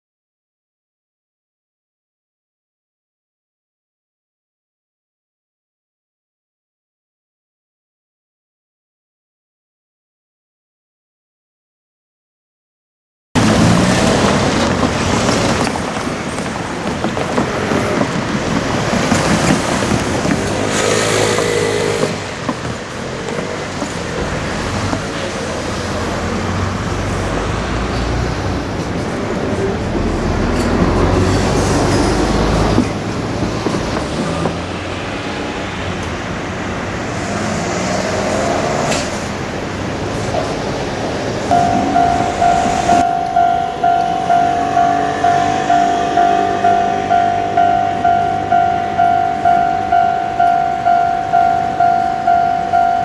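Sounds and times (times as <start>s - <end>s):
rumbling vehicle noise: 13.4s - 53.0s.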